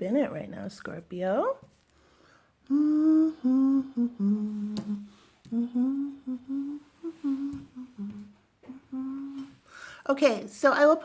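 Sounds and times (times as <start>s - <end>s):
woman humming a slow tune: 2.6s - 9.6s.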